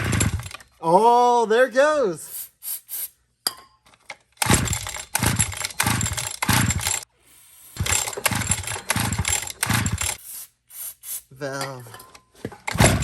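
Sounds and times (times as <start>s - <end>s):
small engine firing in bursts: 0.0s - 0.6s, 4.4s - 7.0s, 7.8s - 10.2s, 12.7s - 13.0s.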